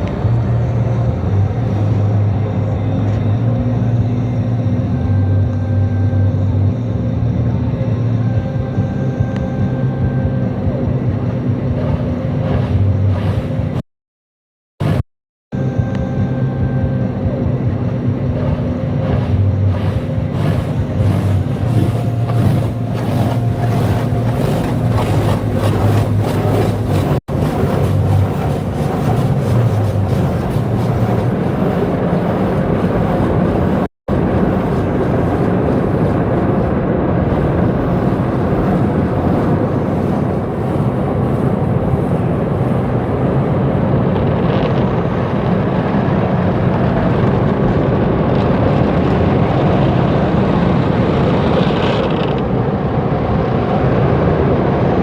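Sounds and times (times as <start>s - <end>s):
low motor hum: 0.0s - 13.8s, 14.8s - 15.0s, 15.6s - 55.0s
mechanical rushing noise: 10.4s - 13.8s, 14.8s - 15.0s, 17.3s - 55.0s.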